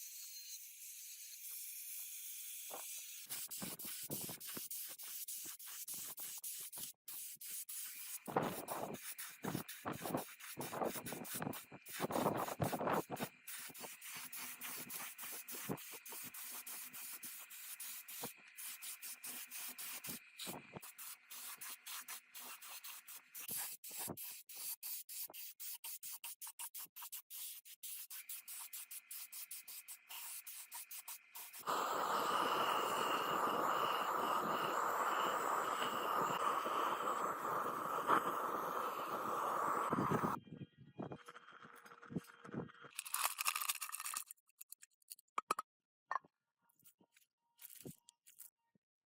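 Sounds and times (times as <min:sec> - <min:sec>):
sanding engine parts: 0:02.8 - 0:40.3
steady noise with high whine: 0:31.6 - 0:40.4.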